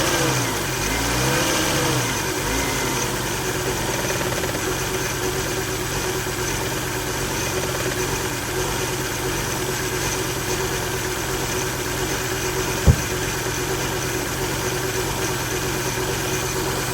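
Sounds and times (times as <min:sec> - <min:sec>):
car engine idling roughly: 0:00.1 - 0:16.9
short low thump: 0:12.9 - 0:13.3.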